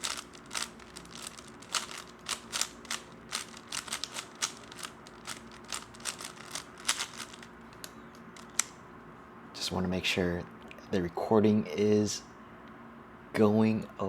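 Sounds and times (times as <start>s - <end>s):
plastic puzzle cube clicking: 0.0s - 8.7s.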